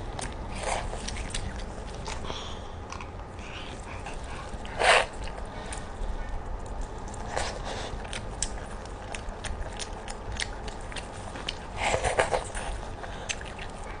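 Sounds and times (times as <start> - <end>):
chewing crispy chicken: 3.8 - 14.0.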